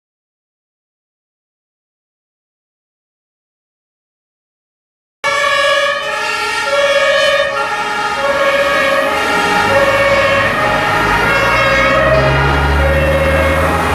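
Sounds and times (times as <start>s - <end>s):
two-tone emergency siren: 5.2s - 13.9s
low vehicle rumble: 5.3s - 13.9s.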